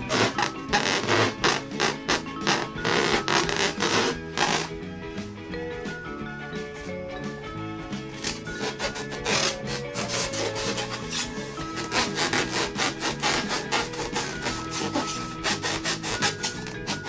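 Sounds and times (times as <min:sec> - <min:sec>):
rapid rasping rubbing strokes: 0:00.0 - 0:04.8, 0:08.2 - 0:17.0
background music: 0:00.0 - 0:17.0.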